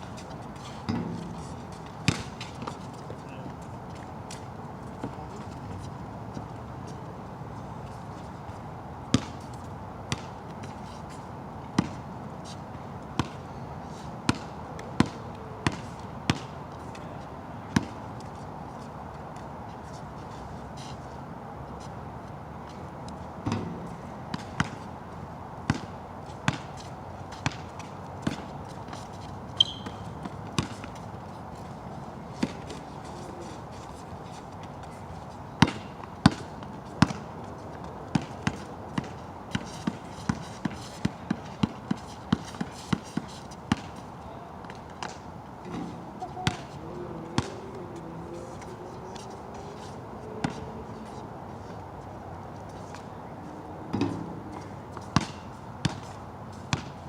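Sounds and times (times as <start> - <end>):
basketball bouncing on court: 0.9 - 2.8, 9.1 - 9.4, 10.1 - 10.3, 15.0 - 16.5, 23.4 - 24.8, 25.7 - 25.9, 27.4 - 27.6, 29.6 - 30.8, 38.1 - 42.6, 43.7 - 43.9, 46.3 - 46.7, 47.4 - 47.7, 54.0 - 56.1, 56.7 - 57.0.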